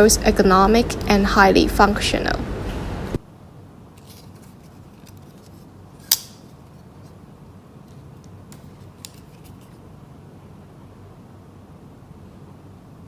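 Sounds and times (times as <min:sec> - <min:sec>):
folding knife metallic snap: 0:06.0 - 0:06.5.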